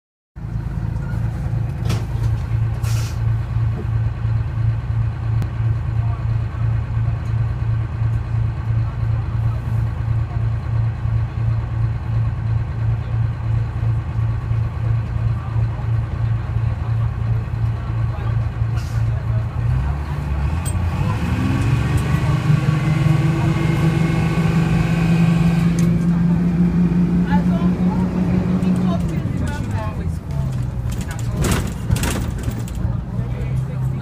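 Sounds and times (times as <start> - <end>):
diesel bus engine idling: 0.4 - 34.0
short hiss: 2.8 - 3.2
click: 25.7 - 26.0.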